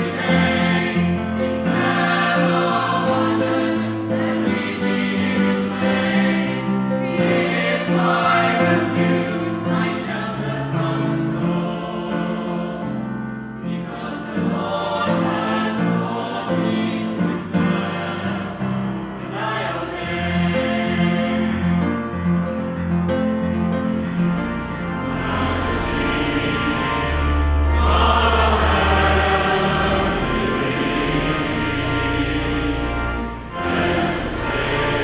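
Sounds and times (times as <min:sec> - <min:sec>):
choir singing: 0:00.0 - 0:35.0
sustained low accompanying notes: 0:23.4 - 0:35.0.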